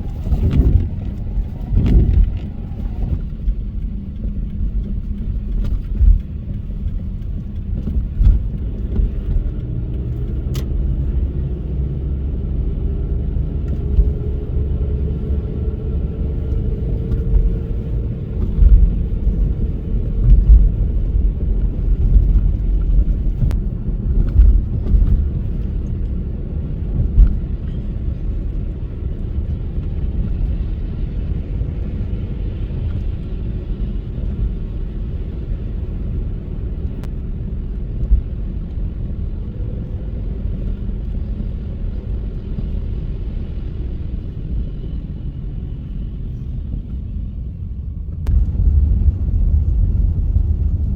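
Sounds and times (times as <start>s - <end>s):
engine and tyres rumbling: 0.0s - 50.9s
heavy low thumps: 48.0s - 50.9s.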